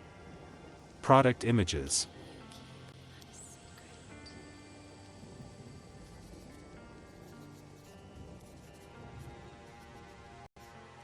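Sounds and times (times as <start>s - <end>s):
quiet background music: 0.0s - 11.0s.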